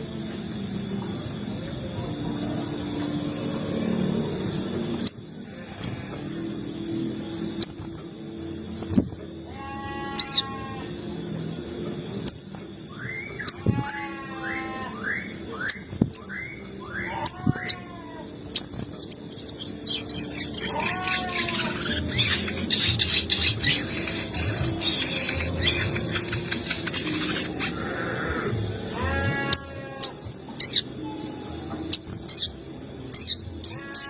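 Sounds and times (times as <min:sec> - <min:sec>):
low background hum: 0:00.0 - 0:34.0
bird chirping high: 0:10.0 - 0:10.6, 0:12.3 - 0:31.0, 0:31.8 - 0:34.0
bird squawking: 0:19.8 - 0:30.8.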